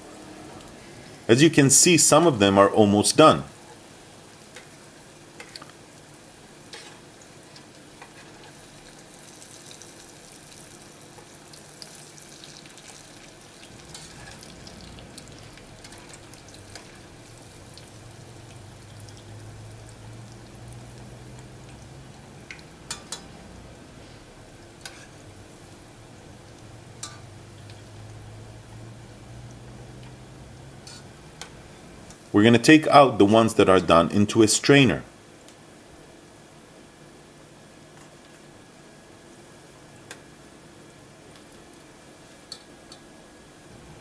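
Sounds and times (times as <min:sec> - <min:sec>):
food deep-frying in hot oil: 0:03.4 - 0:32.3, 0:38.0 - 0:43.7
low hum: 0:13.7 - 0:32.2.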